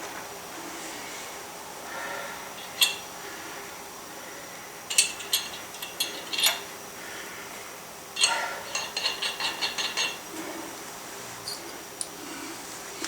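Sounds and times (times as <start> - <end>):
metal tools clinking: 2.6 - 3.0, 4.9 - 6.7, 8.2 - 10.2, 11.4 - 11.6.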